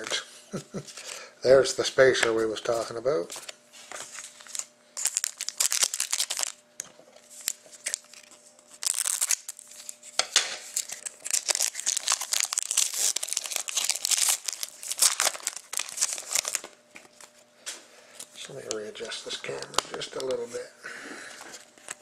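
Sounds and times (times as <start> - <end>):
wrapper crinkling and tearing: 3.4 - 6.6, 7.3 - 17.3, 19.3 - 20.4.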